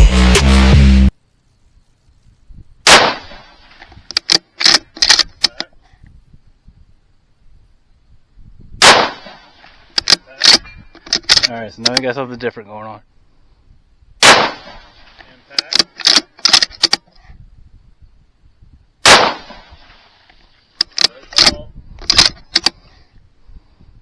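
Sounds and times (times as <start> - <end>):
electronic music: 0.0 - 1.1
rifle shots: 2.8 - 5.3, 8.8 - 11.4, 14.2 - 16.9, 19.0 - 20.2.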